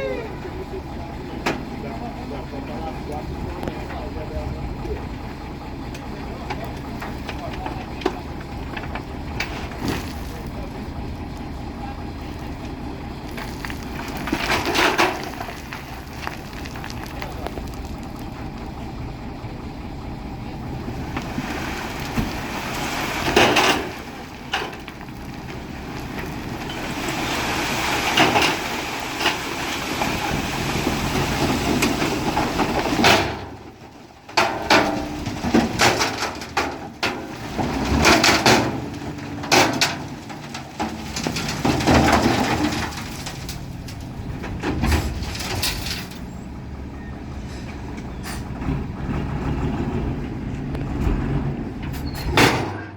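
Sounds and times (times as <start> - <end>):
dump truck engine running: 0.0 - 52.9
truck body clattering: 0.4 - 52.9
soil spilling: 6.6 - 19.0, 20.7 - 46.4.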